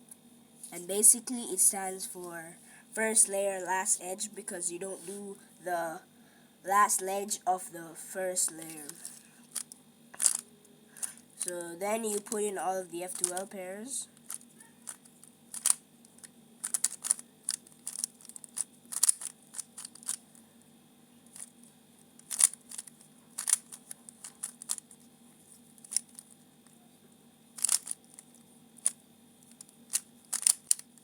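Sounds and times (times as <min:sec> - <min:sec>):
rubik's cube clicking turns: 0:08.9 - 0:10.4, 0:13.1 - 0:13.5, 0:14.2 - 0:20.2, 0:22.2 - 0:24.8, 0:25.8 - 0:26.2, 0:27.6 - 0:28.2, 0:28.8 - 0:31.0.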